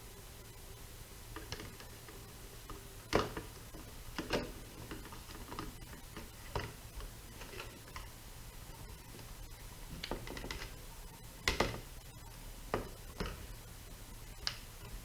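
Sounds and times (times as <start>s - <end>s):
small objects clicking and tapping: 1.4s - 8.1s, 9.9s - 10.8s.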